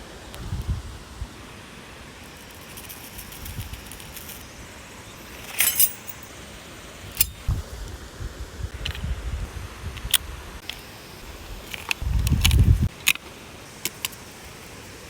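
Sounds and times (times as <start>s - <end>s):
small hard objects clinking: 5.3s - 6.3s.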